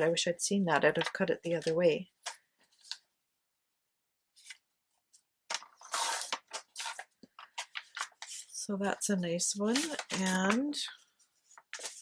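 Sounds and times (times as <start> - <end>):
paper rustling and sliding: 4.4 - 12.0.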